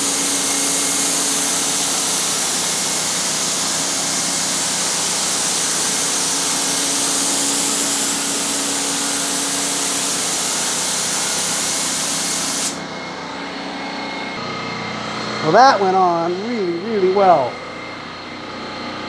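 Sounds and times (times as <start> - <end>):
spray gun hissing: 0.1 - 12.8.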